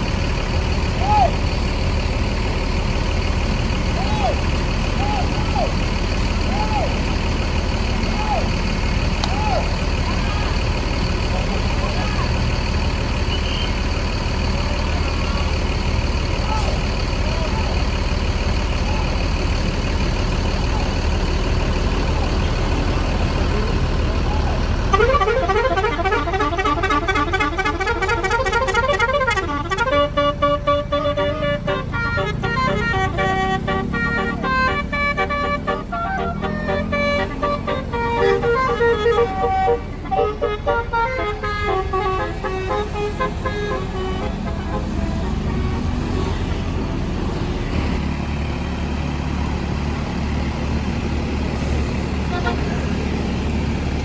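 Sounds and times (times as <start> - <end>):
diesel bus engine rumbling: 0.0 - 54.0
musical air horn tune: 24.9 - 46.4.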